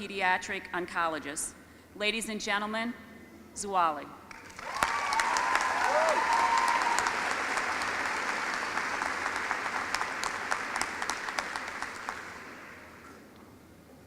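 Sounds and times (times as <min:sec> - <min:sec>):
audience applauding: 0:04.3 - 0:13.0.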